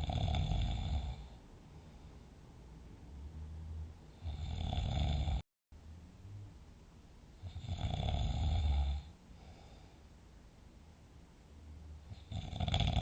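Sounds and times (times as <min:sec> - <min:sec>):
deep snoring: 0:00.0 - 0:01.4, 0:04.1 - 0:05.4, 0:07.4 - 0:09.6, 0:12.1 - 0:13.0
quiet breathing: 0:00.0 - 0:02.7, 0:07.4 - 0:10.9.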